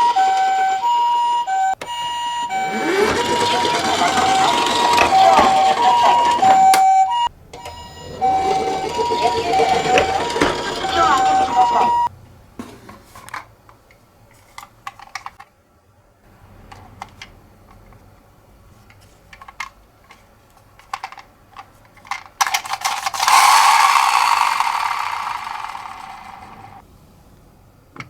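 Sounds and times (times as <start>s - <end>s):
toy car wheels rattling down slope: 2.5s - 6.9s, 7.6s - 12.1s, 20.7s - 26.8s
toy car clicks and taps: 2.7s - 6.9s, 7.6s - 11.7s, 19.3s - 26.8s.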